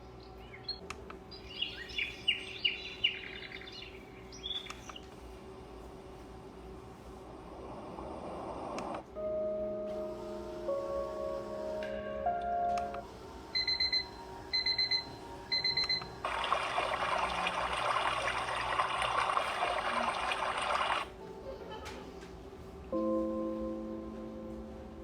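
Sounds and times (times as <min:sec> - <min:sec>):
alarm clock tune: 0:13.6 - 0:16.4
running water nature sound: 0:16.2 - 0:21.1.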